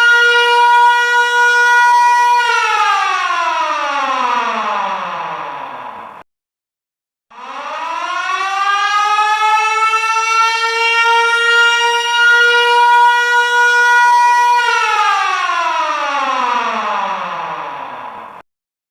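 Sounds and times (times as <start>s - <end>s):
alarm siren wailing: 0.0s - 6.2s, 7.3s - 18.4s.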